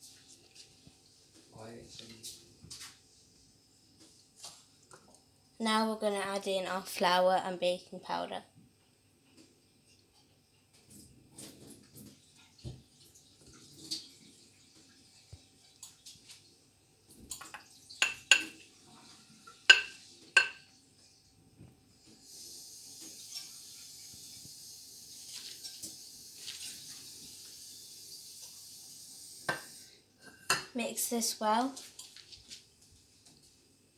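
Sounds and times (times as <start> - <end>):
metal spoon clinking on mug: 17.4 - 18.6, 19.7 - 20.6.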